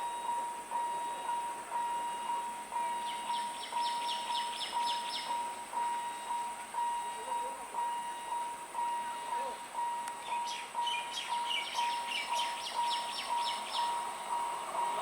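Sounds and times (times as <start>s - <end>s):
level crossing alarm beeping: 0.0s - 15.0s
bird chirping: 2.9s - 5.4s, 10.2s - 14.1s.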